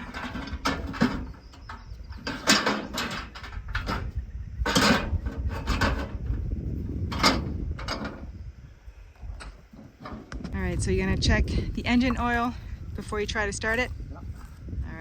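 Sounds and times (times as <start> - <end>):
low rumble: 3.2 - 15.0.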